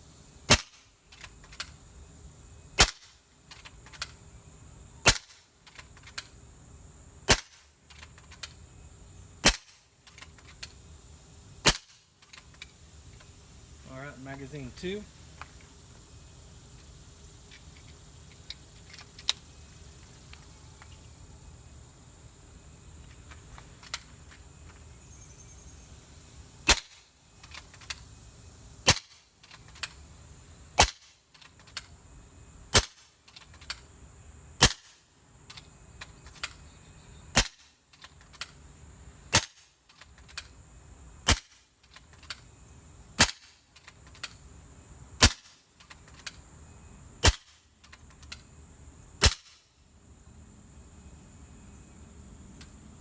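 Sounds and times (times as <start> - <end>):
air rifle shots: 0.5 - 0.9, 2.8 - 3.2, 5.0 - 5.4, 7.3 - 7.6, 9.4 - 9.8, 11.6 - 12.0, 26.7 - 27.1, 28.8 - 29.2, 30.8 - 31.2, 34.6 - 35.0, 37.3 - 37.7, 45.2 - 45.6, 47.2 - 47.6, 49.2 - 49.6.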